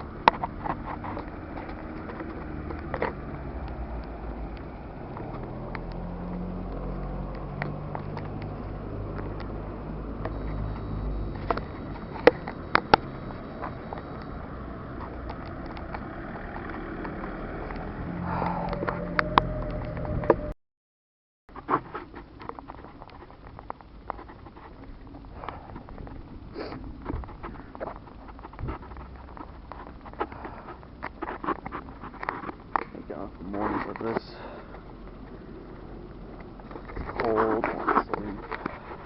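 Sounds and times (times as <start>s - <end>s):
faint thin high tone: 18.3s - 20.6s.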